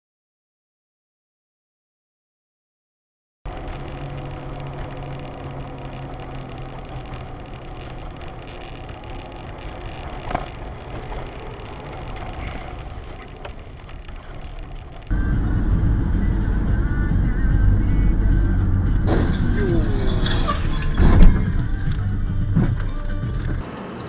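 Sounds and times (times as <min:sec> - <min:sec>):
vehicle engine and road noise: 0:03.5 - 0:24.0
loud deep rumble: 0:15.1 - 0:23.6.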